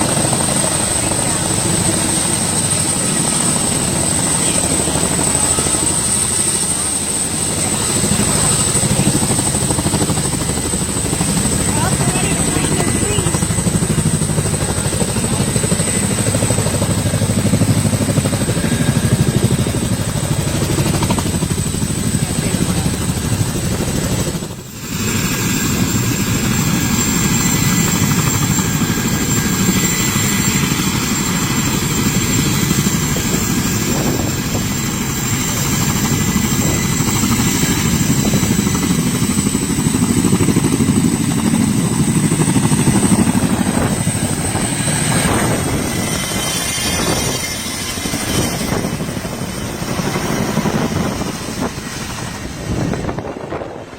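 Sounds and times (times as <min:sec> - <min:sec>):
helicopter rotor and engine: 0:00.0 - 0:53.9.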